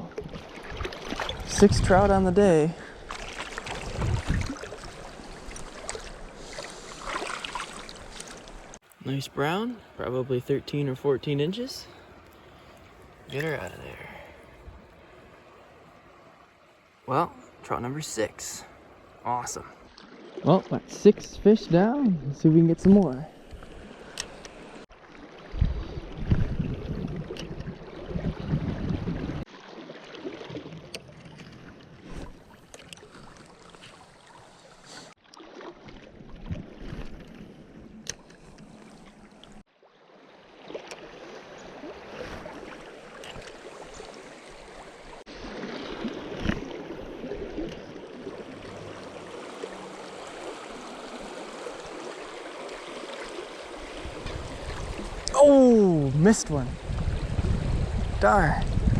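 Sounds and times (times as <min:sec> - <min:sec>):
river water rushing: 0:02.8 - 0:10.3, 0:40.1 - 0:57.4.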